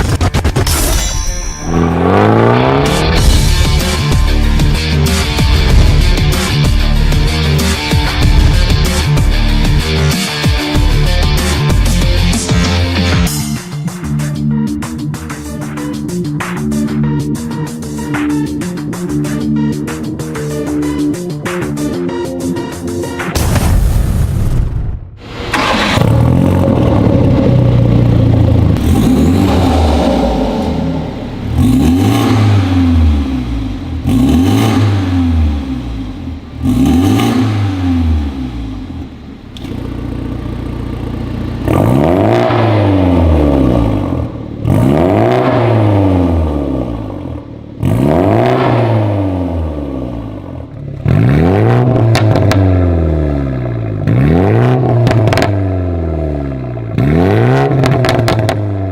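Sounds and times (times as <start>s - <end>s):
exhaust pops and crackles: 0.0s - 0.7s, 51.9s - 52.7s, 55.0s - 55.6s, 57.8s - 58.7s
car engine revving: 1.6s - 13.4s, 25.2s - 58.9s.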